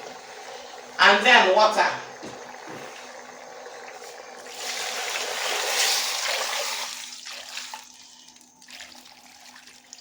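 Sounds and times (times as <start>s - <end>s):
water pouring into a pot: 2.1s - 10.0s.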